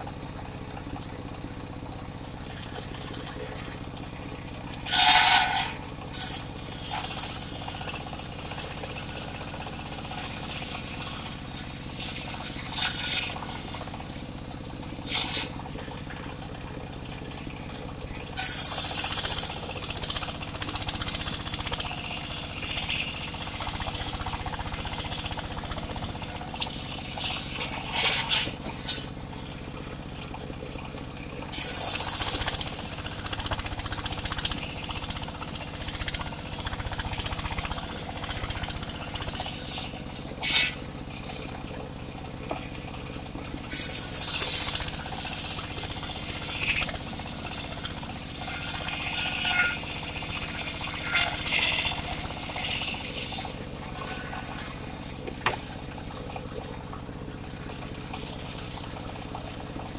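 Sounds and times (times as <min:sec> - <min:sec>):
circular saw cutting wood: 0:04.8 - 0:14.3, 0:18.4 - 0:29.0, 0:31.6 - 0:40.8, 0:43.7 - 0:53.7.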